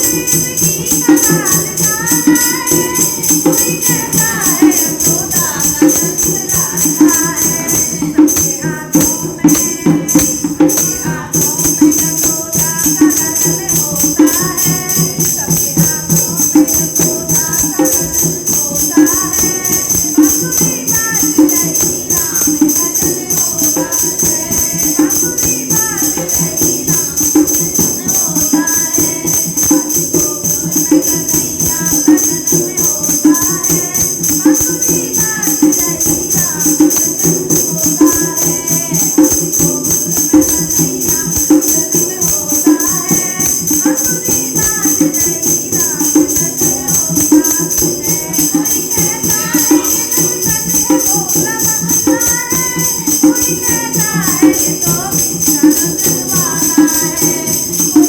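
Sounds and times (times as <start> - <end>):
rhythmic accompaniment: 0.0 - 58.0
women singing a devotional song: 0.0 - 58.0.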